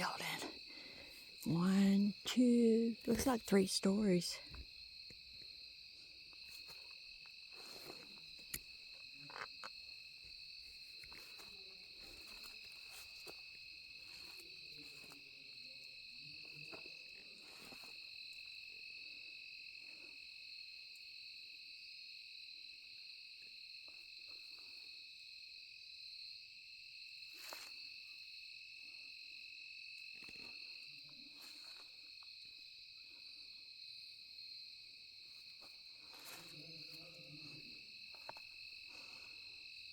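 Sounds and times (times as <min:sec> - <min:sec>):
insect high-pitched trills: 0:00.0 - 0:18.8.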